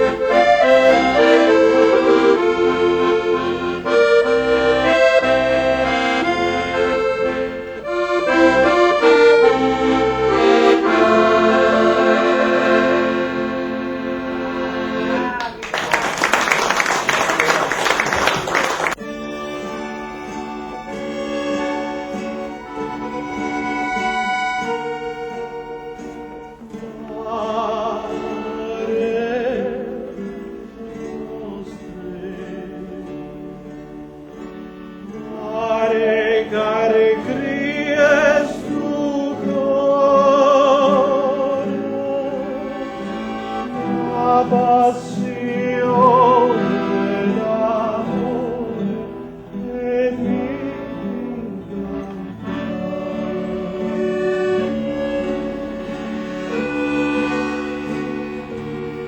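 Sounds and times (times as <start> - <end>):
instrumental accompaniment: 0.0 - 59.0
person singing with vibrato: 26.6 - 33.6, 35.0 - 55.8.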